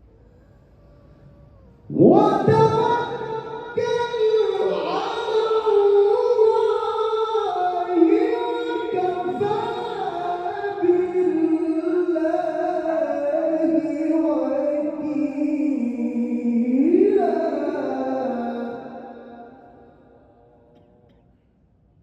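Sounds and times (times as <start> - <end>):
man reciting in melismatic chant: 1.9 - 20.9.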